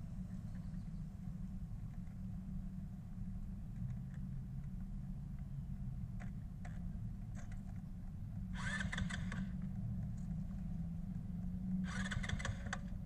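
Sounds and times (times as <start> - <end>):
scooter engine running: 11.3 - 13.0.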